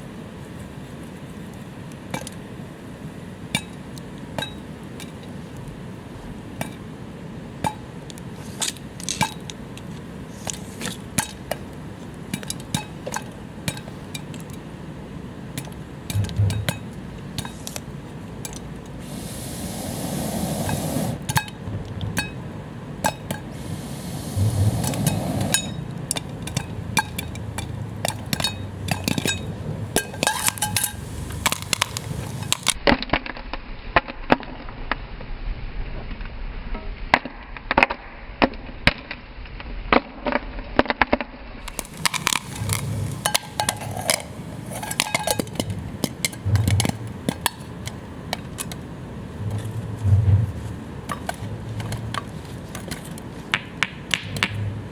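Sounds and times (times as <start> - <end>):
popcorn popping in metal pot: 41.7 - 48.0.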